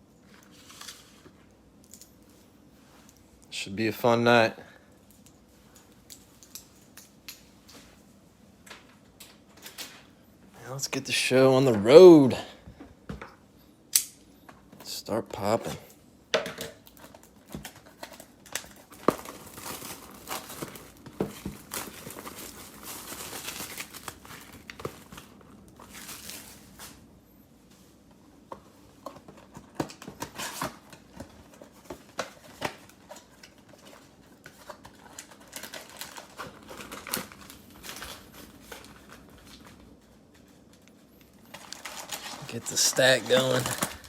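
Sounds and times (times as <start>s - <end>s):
cellophane crinkling and tearing: 16.8s - 27.1s, 29.4s - 44.0s.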